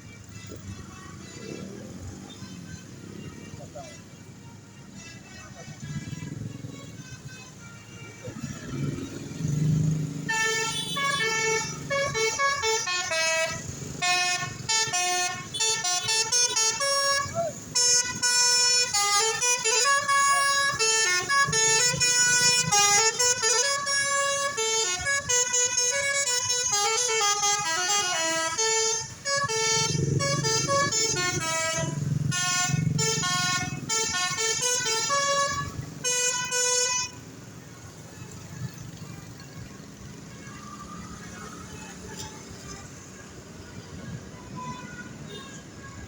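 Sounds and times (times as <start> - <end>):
musical bus air horn: 10.2 - 37.2.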